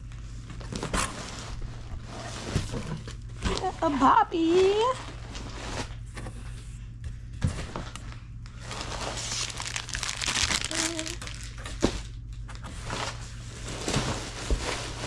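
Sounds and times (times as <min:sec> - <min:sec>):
plastic packaging crinkling: 0:08.5 - 0:12.0.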